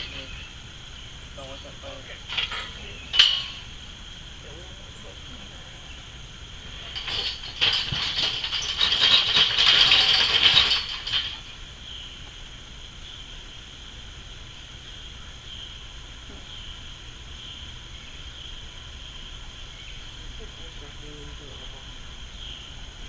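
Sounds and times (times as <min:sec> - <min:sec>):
rapid rattling and rustling: 0:00.0 - 0:12.4
insects droning: 0:00.0 - 0:23.0.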